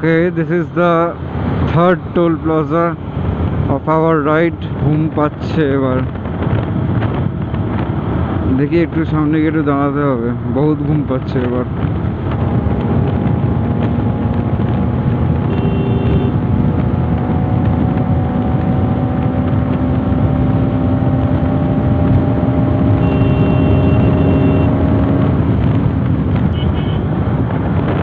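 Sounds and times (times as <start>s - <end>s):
wind noise: 0.0s - 28.0s
motorcycle engine cruising: 10.3s - 28.0s.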